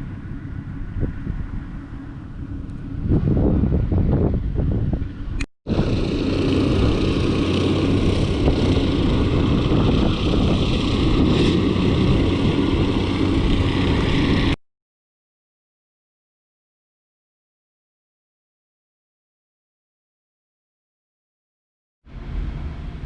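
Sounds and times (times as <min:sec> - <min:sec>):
engine droning: 0:00.0 - 0:14.6, 0:22.1 - 0:23.0
rushing noise: 0:00.0 - 0:14.6.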